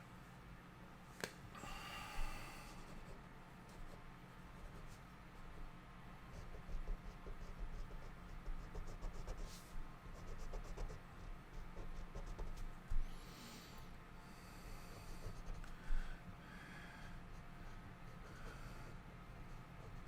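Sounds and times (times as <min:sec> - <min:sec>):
stylus scratching on tablet: 0:02.9 - 0:05.6, 0:06.3 - 0:12.7, 0:14.8 - 0:15.7, 0:17.3 - 0:20.0.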